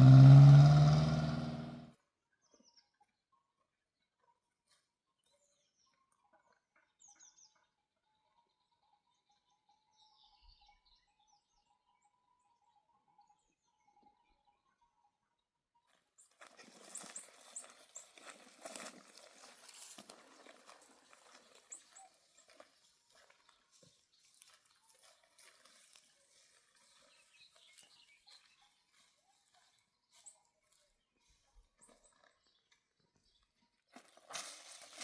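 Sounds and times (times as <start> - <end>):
dry stalks rustling and crackling: 16.2 - 30.8, 33.9 - 35.0.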